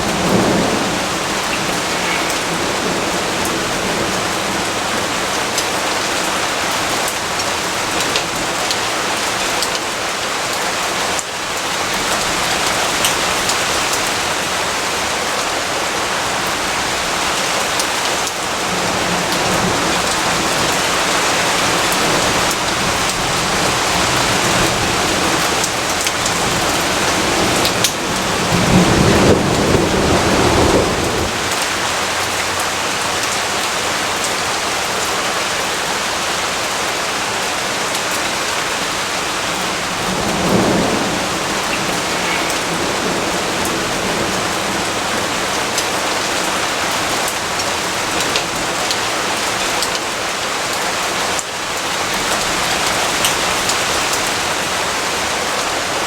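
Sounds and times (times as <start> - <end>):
thunder rumbling: 0.0 - 5.5, 16.8 - 33.3, 38.7 - 48.2
heavy rainfall: 0.0 - 56.0.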